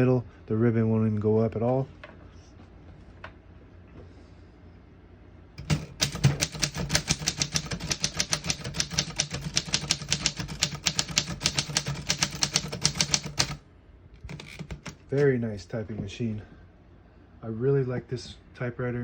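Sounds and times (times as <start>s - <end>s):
typewriter keys clacking: 5.6s - 13.6s, 14.2s - 15.2s.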